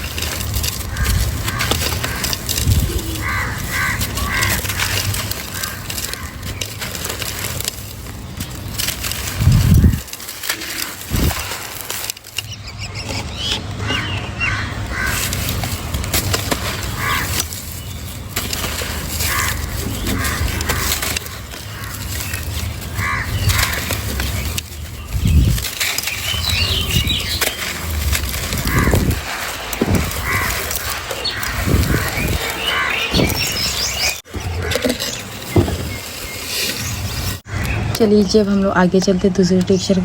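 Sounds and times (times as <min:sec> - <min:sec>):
gritty crunching and crackling: 0:00.0 - 0:38.5
dull thumps: 0:35.4 - 0:36.1.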